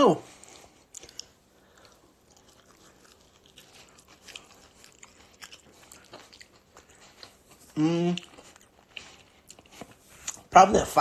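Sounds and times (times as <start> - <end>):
person chewing and crunching: 0.2 - 10.6
small mouth clicks and smacks: 0.9 - 7.4.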